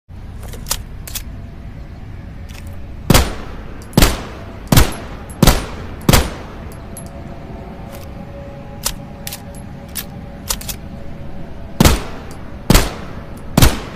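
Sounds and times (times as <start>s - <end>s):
pistol shots: 3.1s - 6.6s, 11.8s - 13.9s.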